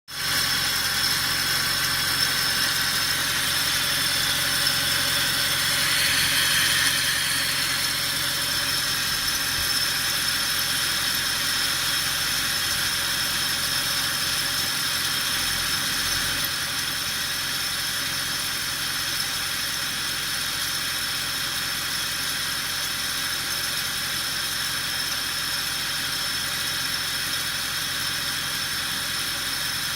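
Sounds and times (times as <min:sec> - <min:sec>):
car engine running: 0:00.2 - 0:20.0.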